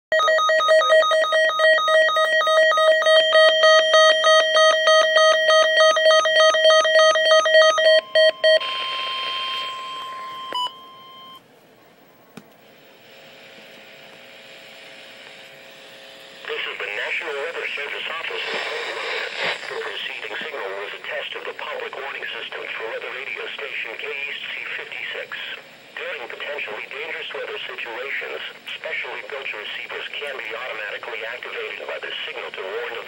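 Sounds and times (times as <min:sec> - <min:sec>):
rapidly pulsing electronic beeping: 0:00.1 - 0:11.4, 0:15.8 - 0:33.0
steady high electronic tone: 0:00.2 - 0:11.4
radio static hiss: 0:12.5 - 0:33.0.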